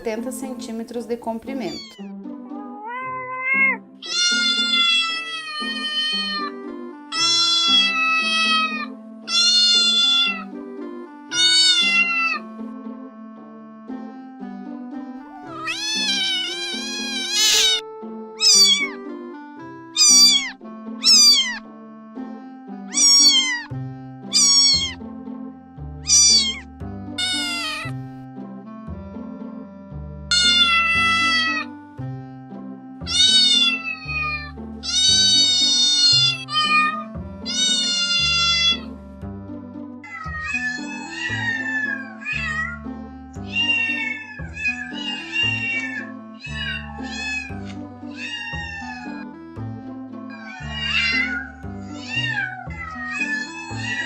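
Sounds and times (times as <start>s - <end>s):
cat meowing: 1.6s - 10.5s, 11.3s - 12.5s, 15.3s - 17.8s, 18.4s - 19.0s, 20.0s - 21.6s, 22.9s - 23.7s, 24.3s - 25.0s, 26.0s - 27.9s, 30.3s - 31.7s, 33.1s - 38.9s, 40.0s - 49.3s, 50.3s - 54.0s
background music with bass line: 22.1s - 40.7s, 49.1s - 50.3s.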